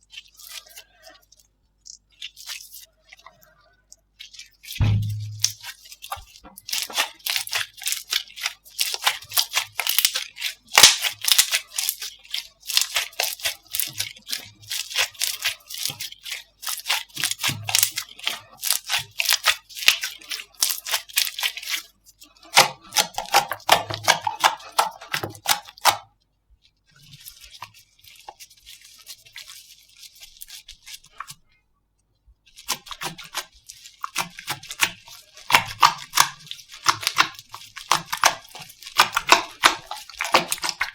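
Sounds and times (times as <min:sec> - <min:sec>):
slime crackling and popping: 0:04.3 - 0:21.8, 0:22.4 - 0:26.0, 0:32.5 - 0:40.9.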